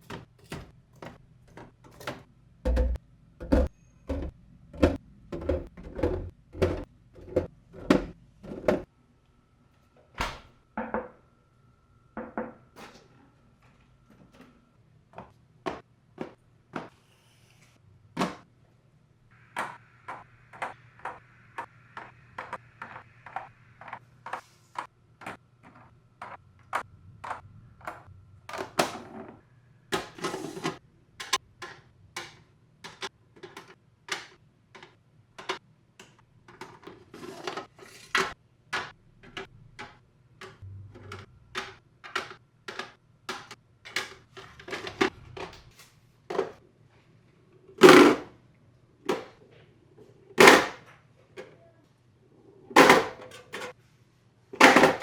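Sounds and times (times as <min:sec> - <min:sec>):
food containers clattering: 0:00.0 - 0:08.9, 0:30.0 - 0:35.6, 0:36.5 - 0:46.6, 0:47.7 - 0:48.3, 0:49.1 - 0:51.6, 0:52.7 - 0:53.8, 0:54.6 - 0:55.0.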